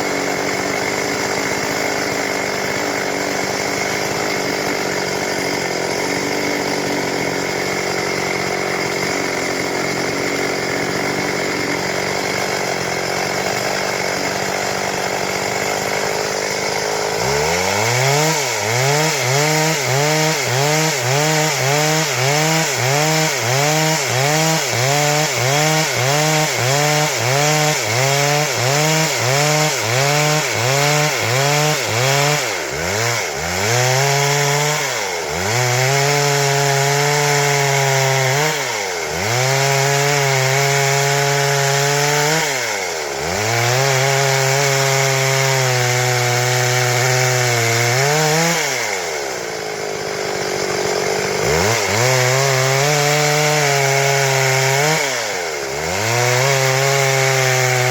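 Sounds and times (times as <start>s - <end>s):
chainsaw cutting wood: 0.0s - 57.9s.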